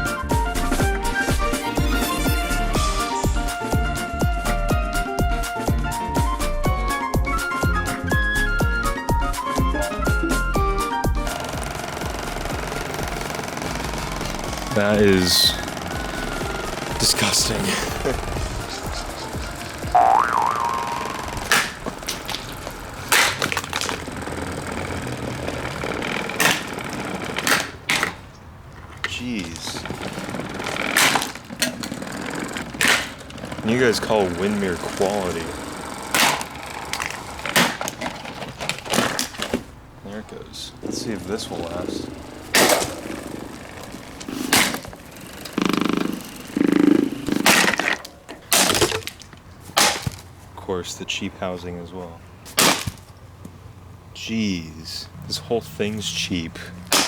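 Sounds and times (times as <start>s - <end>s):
loud rattling buzzes: 11.1s - 39.9s, 40.6s - 50.2s
plastic fan being smashed: 18.0s - 28.3s, 28.9s - 39.8s, 42.4s - 45.2s, 47.3s - 50.4s, 52.5s - 53.2s
plastic knocks and cracks: 18.4s - 33.7s, 35.7s - 39.7s, 47.4s - 50.3s, 52.5s - 53.2s.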